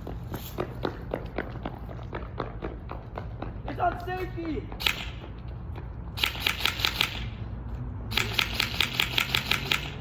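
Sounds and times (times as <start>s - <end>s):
airsoft gun firing bursts: 4.8s - 5.2s, 6.2s - 7.4s, 8.1s - 10.0s.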